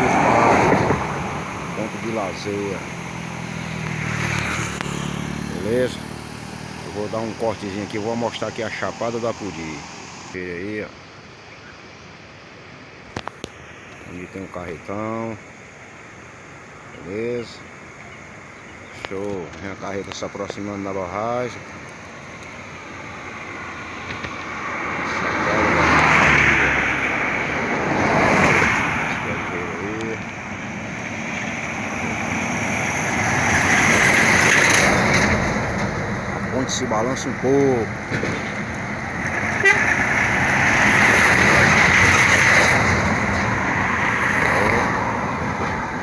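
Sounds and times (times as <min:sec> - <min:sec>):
truck passing by: 0:00.0 - 0:10.4, 0:21.1 - 0:46.0.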